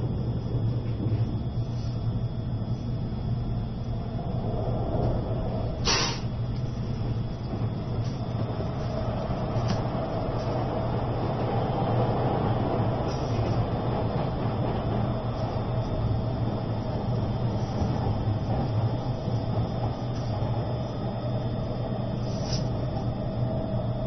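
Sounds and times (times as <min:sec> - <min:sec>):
train rumbling: 0:00.0 - 0:24.0
short hiss: 0:05.8 - 0:06.3.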